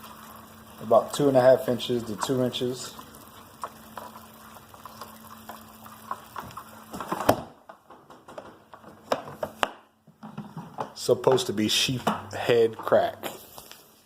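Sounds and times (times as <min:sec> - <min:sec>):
crabs scratching and clicking: 0:01.7 - 0:07.2.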